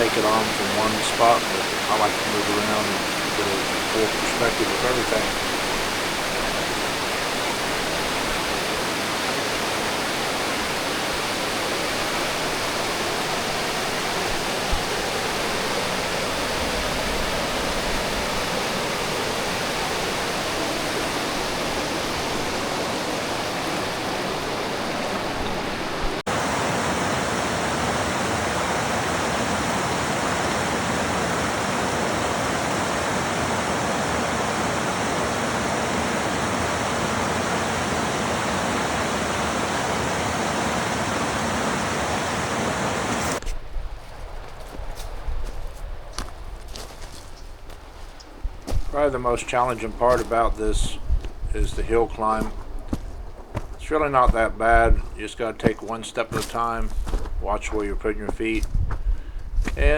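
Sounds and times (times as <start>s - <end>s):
waterfall rushing over rocks: 0.0s - 43.4s.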